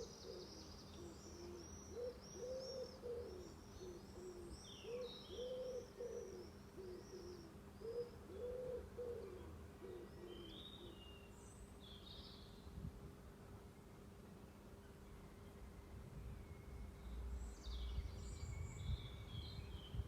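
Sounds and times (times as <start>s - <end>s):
pigeon cooing: 1.3s - 11.0s.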